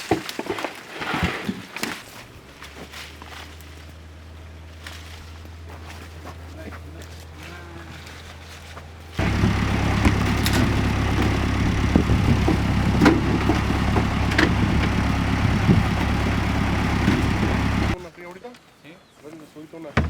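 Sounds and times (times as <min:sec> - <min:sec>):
loud machinery humming: 0:09.2 - 0:18.0
sharp knocks: 0:09.2 - 0:18.0.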